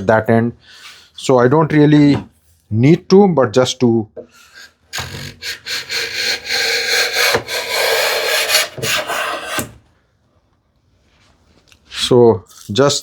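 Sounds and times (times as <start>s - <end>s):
hand plane hissing cut: 4.4s - 9.8s.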